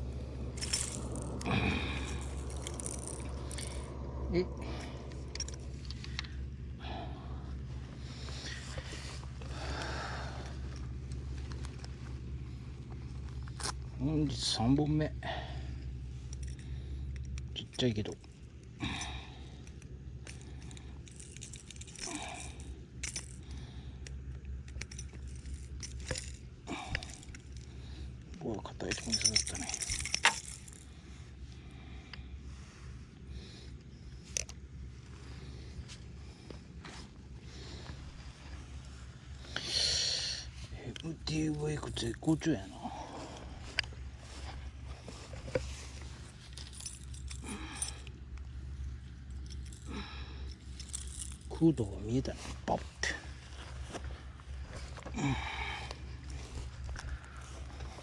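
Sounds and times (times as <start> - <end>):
fishing tackle clicking and jingling: 0.0 - 6.8, 12.9 - 32.2, 33.7 - 34.8, 40.9 - 52.3
low rumble: 0.0 - 17.6
steady low hum: 0.0 - 58.0.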